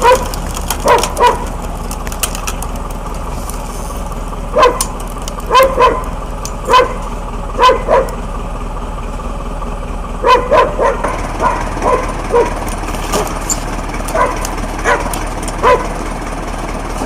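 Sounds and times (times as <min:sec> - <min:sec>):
dog barking: 0:00.0 - 0:01.5, 0:04.5 - 0:08.2, 0:10.2 - 0:13.3, 0:14.1 - 0:16.0
machine hum: 0:00.0 - 0:17.0.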